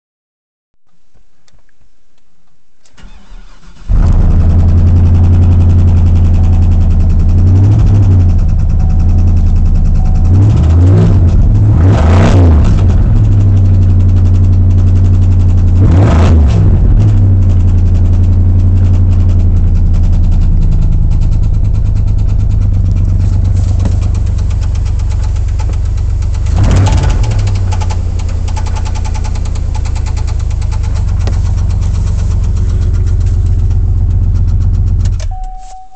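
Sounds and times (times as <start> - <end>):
engine starting and idling: 2.8 - 35.8
low hum: 3.9 - 16.0, 16.6 - 35.9
engine rod knocking: 26.8 - 33.3.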